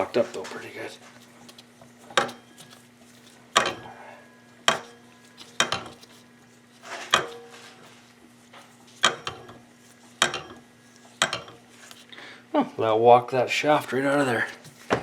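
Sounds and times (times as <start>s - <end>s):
metallic taps with ring: 10.2s - 10.6s.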